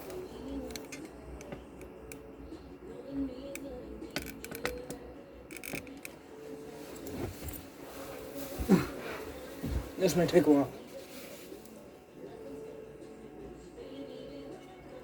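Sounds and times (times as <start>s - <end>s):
plastic connectors clicking: 0.0s - 2.2s, 3.5s - 6.2s.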